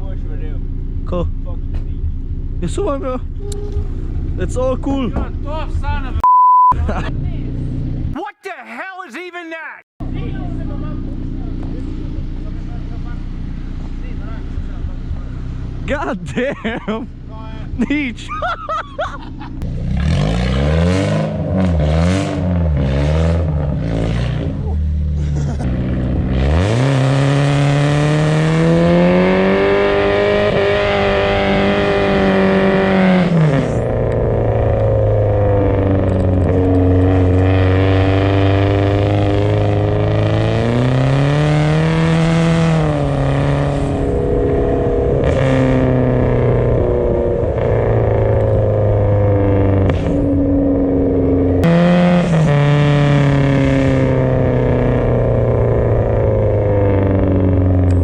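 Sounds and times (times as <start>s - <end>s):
car engine revving: 10.0s - 58.0s.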